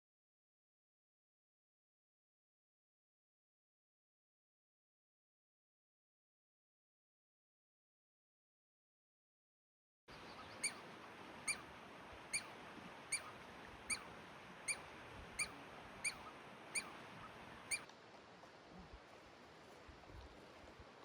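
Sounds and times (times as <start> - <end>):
faint steady background noise: 10.1 - 21.0
small animal chirping: 10.4 - 10.8, 11.4 - 11.6, 13.1 - 13.3, 13.9 - 14.1, 15.4 - 17.0, 17.6 - 17.9.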